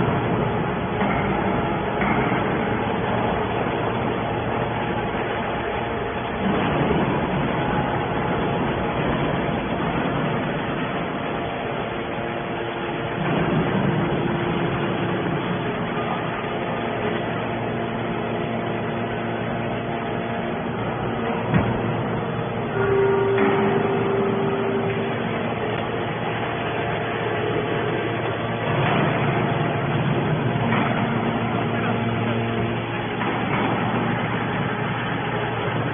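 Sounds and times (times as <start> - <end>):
baler machine droning: 0.0 - 35.9
clear tone: 22.7 - 26.0.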